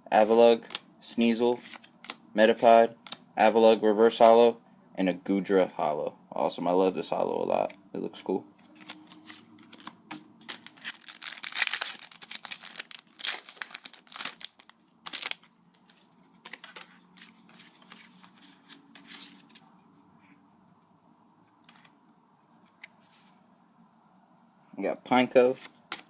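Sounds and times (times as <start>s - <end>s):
foil wrapper crinkling and tearing: 8.8s - 15.5s.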